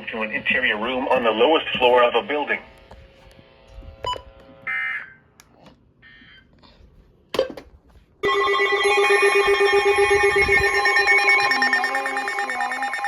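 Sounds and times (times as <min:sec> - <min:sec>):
shrill pulsing alert alarm: 0:08.2 - 0:13.0.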